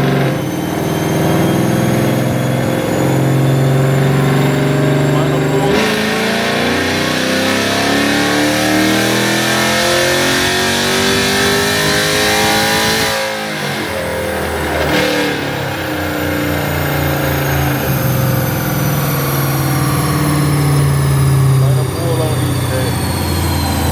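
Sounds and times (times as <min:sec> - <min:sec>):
car engine accelerating hard: 0:00.0 - 0:23.9.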